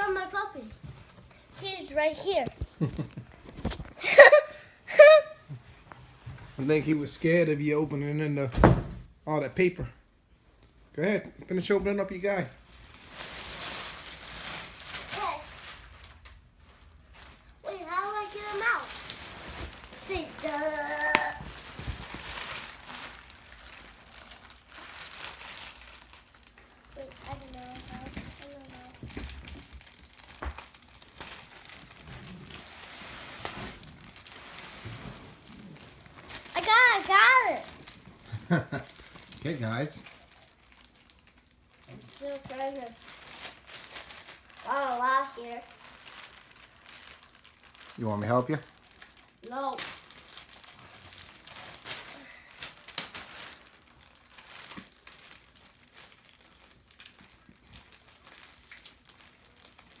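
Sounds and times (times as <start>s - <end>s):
wrapping paper crinkling: 12.1s - 60.0s.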